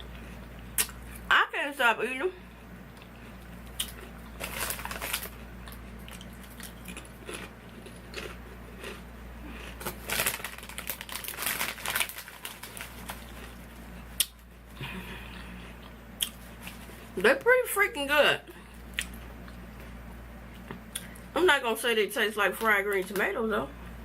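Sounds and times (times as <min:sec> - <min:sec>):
chips crunching: 0:03.7 - 0:14.5
chip bag crinkling: 0:03.8 - 0:14.5, 0:16.2 - 0:17.2.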